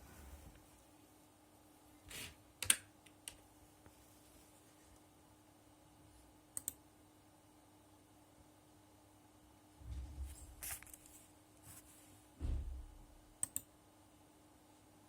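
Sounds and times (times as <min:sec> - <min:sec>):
faint steady hum: 0:00.0 - 0:15.0
computer mouse clicks: 0:06.5 - 0:06.8, 0:13.4 - 0:13.7.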